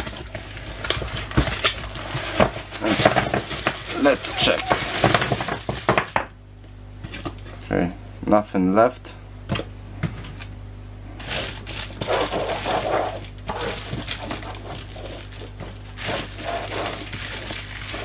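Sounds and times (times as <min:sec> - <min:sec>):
tablets rustling and knocking: 0:00.0 - 0:06.3, 0:11.2 - 0:18.0.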